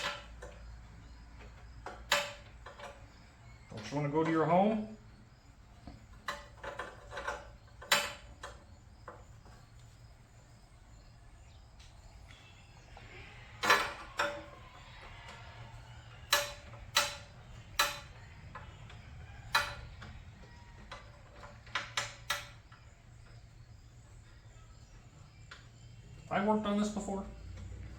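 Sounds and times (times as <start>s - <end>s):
metal parts and tools clicking: 6.1s - 9.2s, 13.6s - 23.5s.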